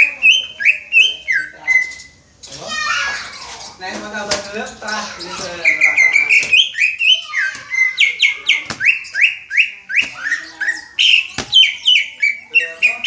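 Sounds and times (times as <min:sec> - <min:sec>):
bird singing whistled notes: 0:00.0 - 0:03.1, 0:04.2 - 0:13.0
sharp knocks: 0:07.4 - 0:09.2, 0:09.9 - 0:11.9.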